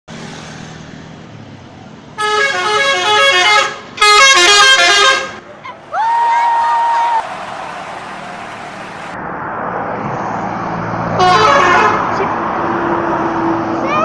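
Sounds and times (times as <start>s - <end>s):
road noise: 0.1s - 14.0s
bus musical horn: 2.2s - 5.5s, 11.2s - 12.2s.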